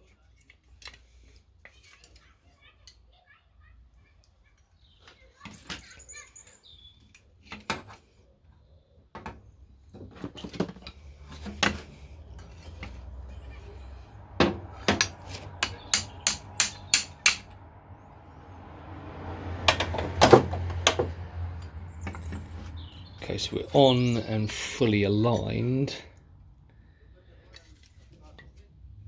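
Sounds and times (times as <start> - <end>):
hammer tapping on metal: 14.4 - 17.5.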